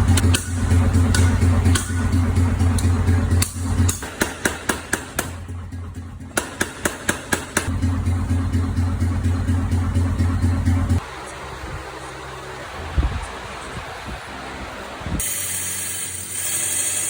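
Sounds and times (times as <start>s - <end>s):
low machine hum: 0.0s - 4.1s
hammer striking hot steel: 0.1s - 5.5s, 6.2s - 7.7s.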